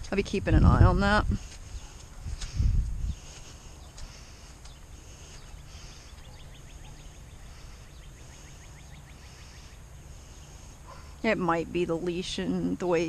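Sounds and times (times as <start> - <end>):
bird trilling chirps: 3.8 - 11.2.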